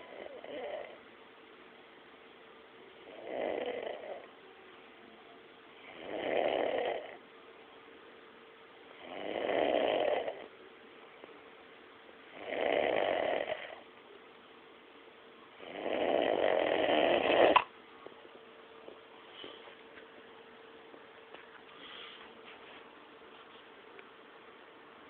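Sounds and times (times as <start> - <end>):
person snoring: 3.0 - 4.3, 5.8 - 7.2, 9.0 - 10.5, 12.4 - 13.8, 15.6 - 17.7.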